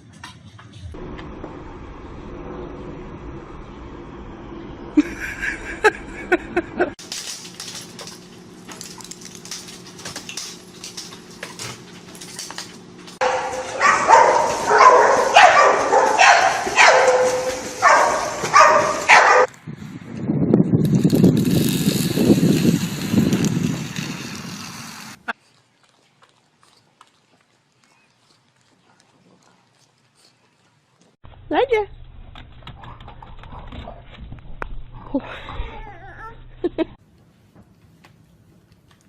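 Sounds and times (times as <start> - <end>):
dog calling: 13.2 - 19.5.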